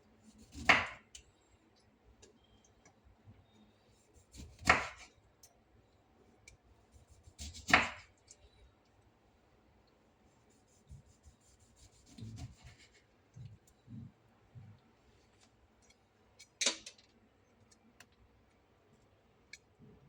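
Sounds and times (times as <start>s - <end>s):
knife cutting on cutting board: 10.9s - 13.0s.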